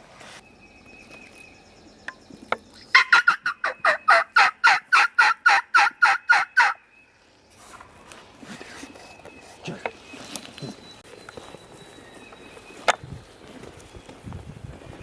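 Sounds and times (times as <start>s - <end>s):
turkey yelps: 2.9s - 6.8s.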